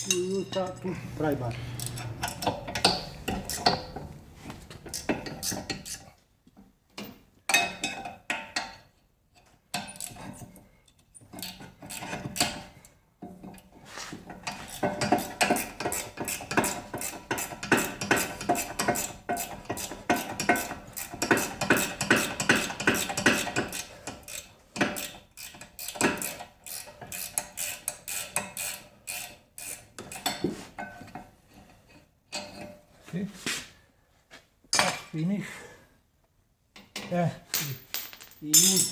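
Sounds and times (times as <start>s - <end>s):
metal-on-metal clinks: 0.0s - 0.8s, 37.0s - 38.9s.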